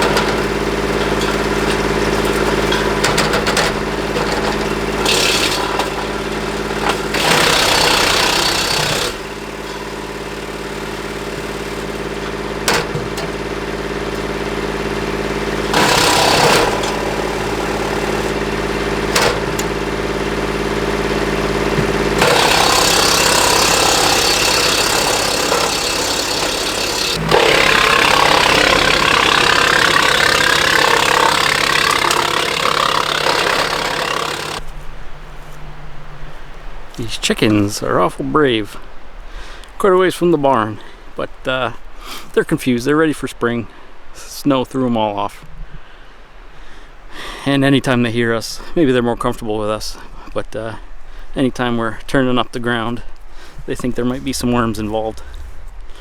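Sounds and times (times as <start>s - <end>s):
tractor diesel engine running: 0.0s - 42.0s
wood chipper chipping brush: 0.0s - 42.4s.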